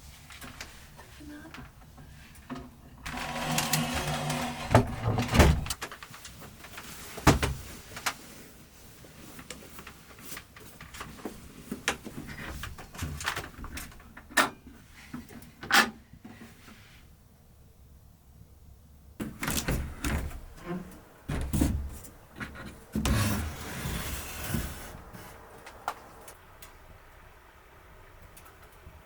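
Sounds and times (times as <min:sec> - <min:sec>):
knocks and clunks of handling: 0:19.2 - 0:23.3.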